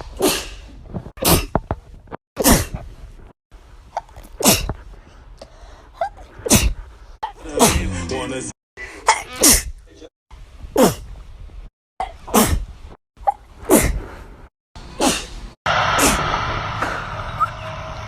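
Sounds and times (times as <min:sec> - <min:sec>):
woman sneezing: 0:09.0 - 0:09.7.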